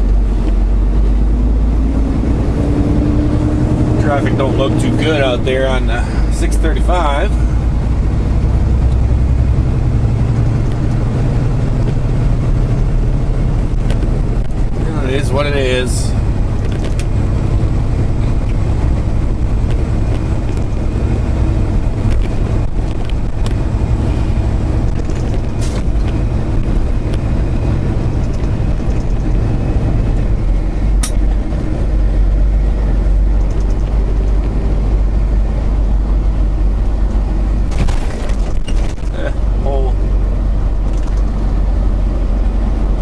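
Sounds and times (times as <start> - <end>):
diesel engine running: 0.0 - 43.0
sharp clicks: 24.8 - 27.3, 28.0 - 29.4, 33.2 - 34.6, 40.8 - 41.5.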